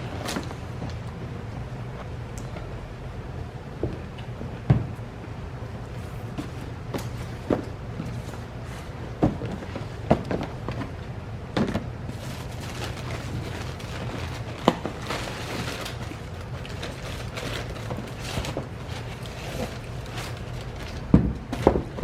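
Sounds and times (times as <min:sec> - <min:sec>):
steady low hum: 0:00.0 - 0:22.0.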